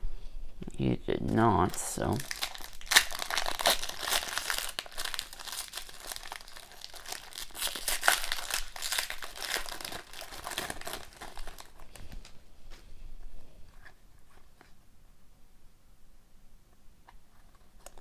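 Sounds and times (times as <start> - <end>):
cards and foil wrapper crinkling: 1.0 - 12.4.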